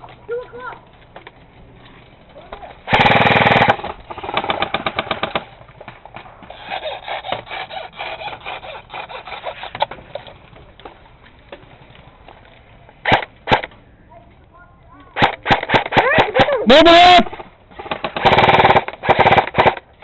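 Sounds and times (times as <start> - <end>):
airsoft gun bursts: 2.9 - 5.5, 13.0 - 13.7, 15.2 - 17.2, 17.8 - 19.9.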